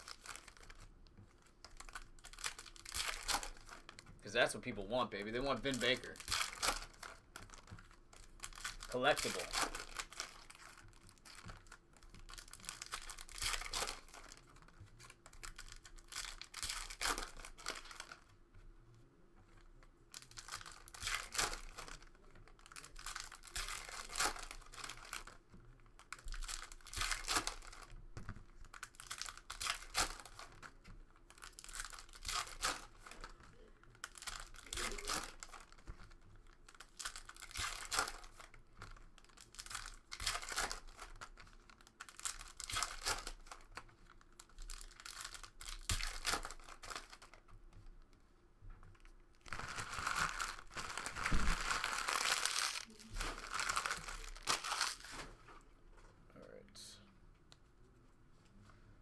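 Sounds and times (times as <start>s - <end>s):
card pack wrappers tearing: 0.0s - 0.9s, 1.6s - 4.6s, 5.2s - 18.2s, 20.1s - 25.4s, 26.0s - 28.0s, 28.7s - 30.7s, 31.3s - 35.9s, 36.7s - 43.8s, 44.4s - 47.4s, 49.4s - 55.3s.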